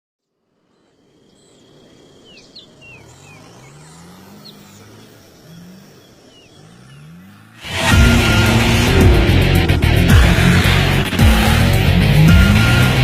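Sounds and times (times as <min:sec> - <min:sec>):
birds chirping: 0:00.2 - 0:13.0
high insect drone: 0:00.3 - 0:12.6
distant engine revving: 0:01.6 - 0:13.0.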